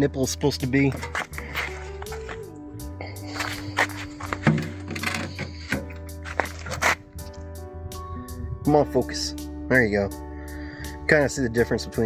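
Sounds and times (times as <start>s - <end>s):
background music with low bass: 0.0s - 12.0s.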